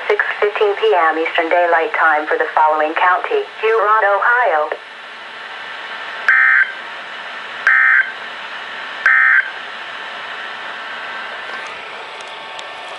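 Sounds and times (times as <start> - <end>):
radio hiss: 0.0 - 6.8
buzzy data bursts: 6.3 - 6.8, 9.0 - 9.5.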